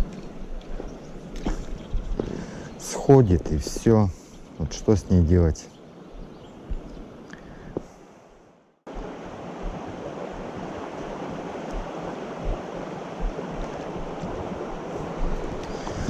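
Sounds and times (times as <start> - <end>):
river rapids rushing over stones: 8.9 - 16.0.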